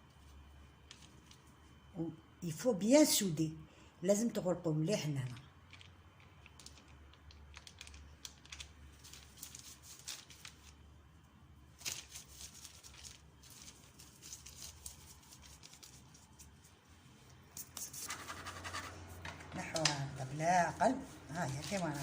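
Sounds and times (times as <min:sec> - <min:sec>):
dough rustling: 0:07.4 - 0:10.9, 0:11.7 - 0:22.0.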